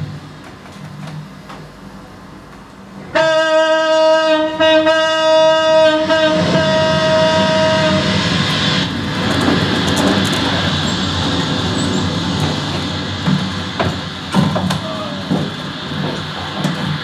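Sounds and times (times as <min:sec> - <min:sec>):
horn blowing long note: 0:03.1 - 0:08.3
steady rushing noise: 0:07.3 - 0:17.0.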